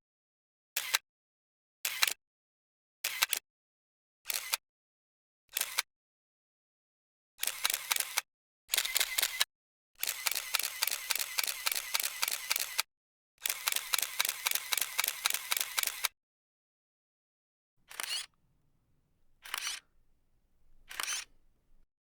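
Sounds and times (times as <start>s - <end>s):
camera shutter burst clicks: 7.4s - 9.4s, 10.0s - 12.8s, 13.4s - 16.1s, 19.4s - 19.9s, 20.9s - 21.4s.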